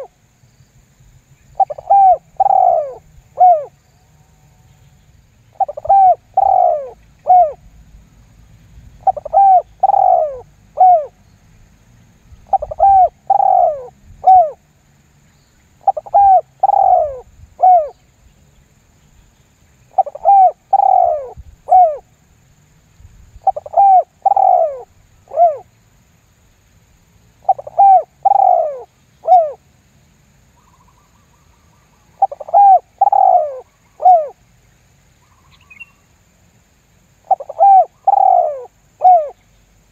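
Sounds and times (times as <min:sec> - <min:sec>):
dove cooing: 0:01.6 - 0:03.8, 0:05.5 - 0:07.6, 0:09.0 - 0:11.2, 0:12.5 - 0:14.6, 0:15.8 - 0:18.0, 0:19.9 - 0:22.1, 0:23.4 - 0:25.7, 0:27.4 - 0:29.6, 0:32.2 - 0:34.4, 0:37.2 - 0:39.4.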